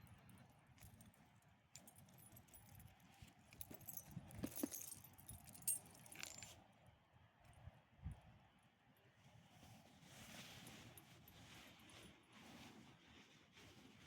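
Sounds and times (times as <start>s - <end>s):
metallic jingling: 3.7s - 6.5s.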